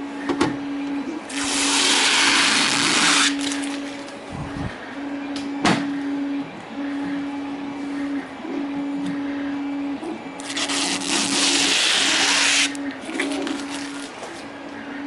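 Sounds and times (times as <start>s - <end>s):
steady low hum: 0.0s - 15.0s
packaging rustling: 13.1s - 14.2s.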